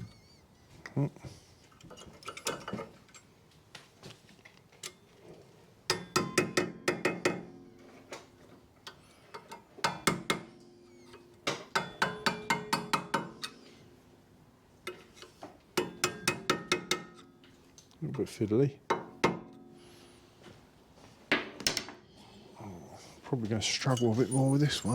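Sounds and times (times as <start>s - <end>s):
hammer tapping metal: 5.9s - 7.8s, 9.3s - 13.6s, 14.9s - 17.4s, 18.9s - 19.6s.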